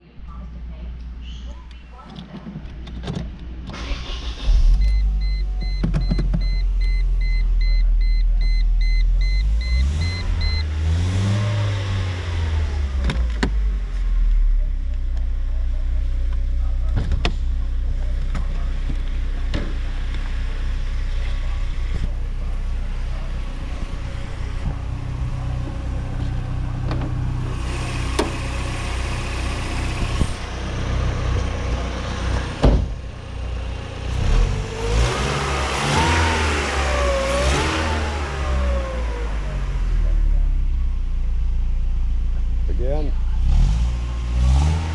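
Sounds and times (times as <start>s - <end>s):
car engine idling: 3.3s - 44.9s.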